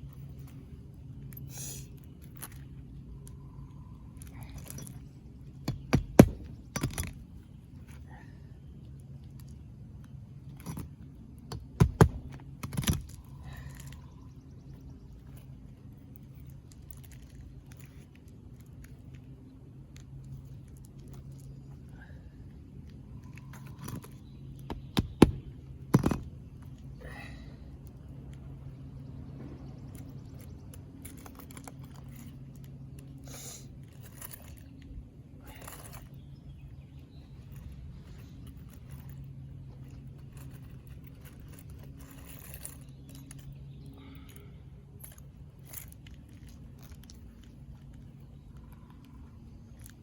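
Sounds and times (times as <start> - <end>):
steady low hum: 0.0 - 50.0
shingle scraping and crunching: 4.5 - 7.6, 10.4 - 14.2, 23.4 - 26.8.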